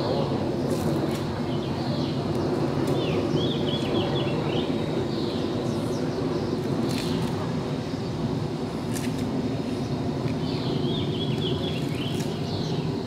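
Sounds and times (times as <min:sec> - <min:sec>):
small bird chirping: 0:10.4 - 0:13.0.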